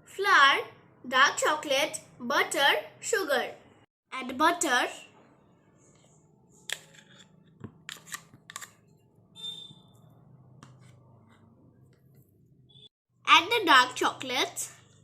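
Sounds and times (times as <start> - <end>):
utensil scrape: 5.9 - 8.8.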